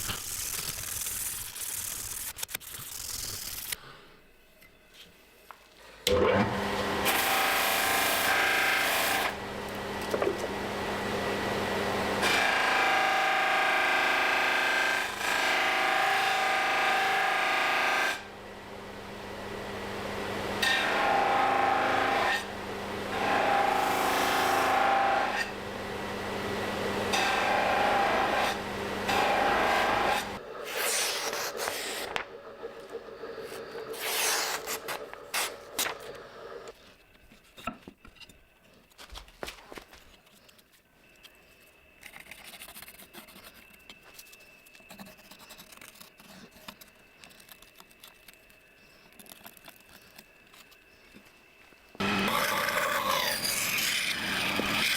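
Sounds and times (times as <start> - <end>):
machine hum: 6.5 - 30.8, 31.5 - 36.8
scraping strokes: 30.6 - 32.3.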